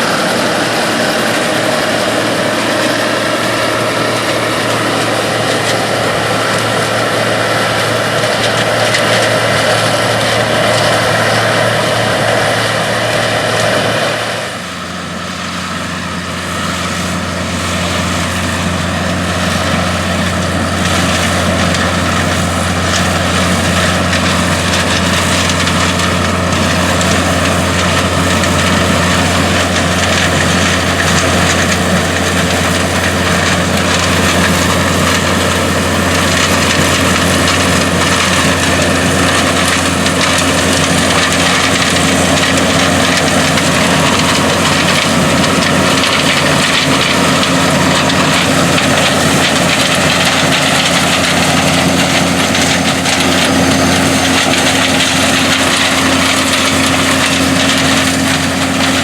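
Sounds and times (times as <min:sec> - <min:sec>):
combine harvester engine droning: 0:00.0 - 0:59.0.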